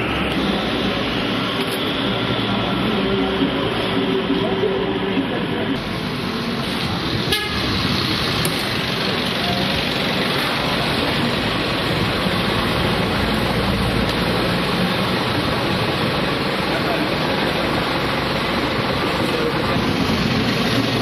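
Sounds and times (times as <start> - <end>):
loud rushing noise: 0.0 - 21.0
vehicle horn toot: 7.3 - 7.7.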